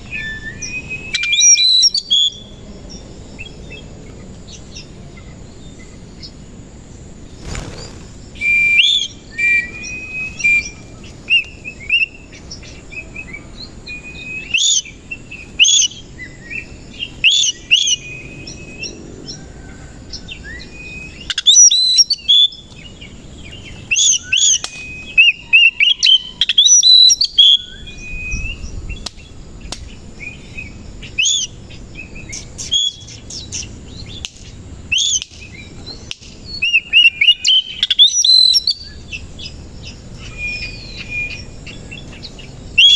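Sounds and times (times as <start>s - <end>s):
songbird whistling phrases: 36.6s - 39.0s.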